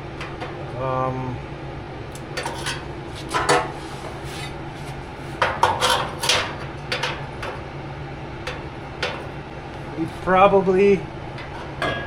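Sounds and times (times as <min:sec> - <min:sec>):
steady low hum: 0:00.0 - 0:12.0
metal clanks and scraping: 0:00.2 - 0:00.6, 0:02.4 - 0:04.6, 0:05.4 - 0:07.6, 0:08.4 - 0:09.4, 0:11.3 - 0:12.0.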